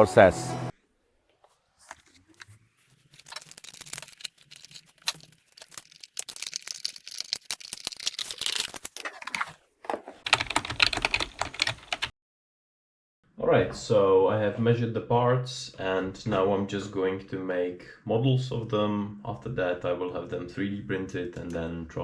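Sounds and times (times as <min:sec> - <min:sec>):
loud rustling: 0:01.4 - 0:09.6
rapid clicking of small objects: 0:02.9 - 0:09.6.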